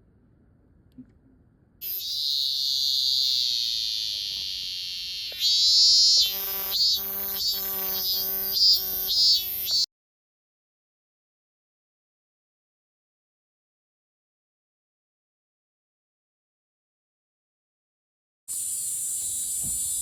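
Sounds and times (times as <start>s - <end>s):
cicada buzzing: 1.8s - 9.9s, 18.5s - 20.0s.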